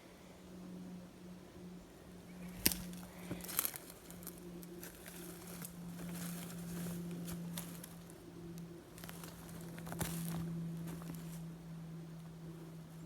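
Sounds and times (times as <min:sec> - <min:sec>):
footsteps through brush: 0:02.4 - 0:08.2, 0:08.9 - 0:11.5
twigs and dry leaves crackling: 0:02.4 - 0:11.5.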